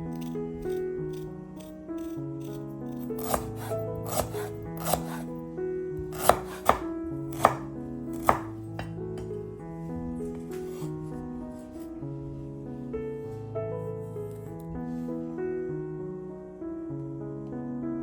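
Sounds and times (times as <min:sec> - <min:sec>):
background music: 0:00.0 - 0:18.0
knife chopping on cutting board: 0:03.0 - 0:05.3, 0:06.0 - 0:09.4.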